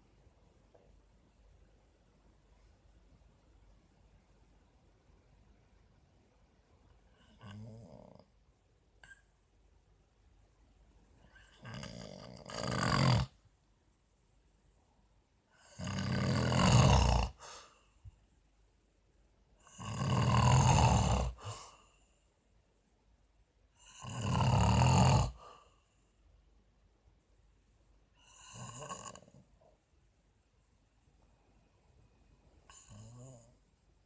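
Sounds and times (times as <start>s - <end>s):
man snoring: 7.3s - 8.2s, 11.5s - 13.4s, 15.6s - 17.6s, 19.6s - 21.7s, 23.8s - 25.5s, 28.2s - 29.4s, 32.7s - 33.6s.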